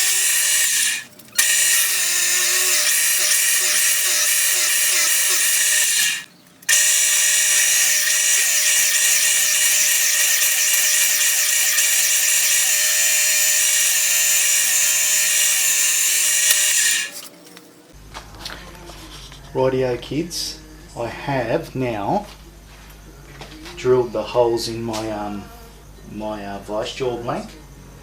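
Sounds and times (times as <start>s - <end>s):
power drill boring wood: 0.0s - 17.4s.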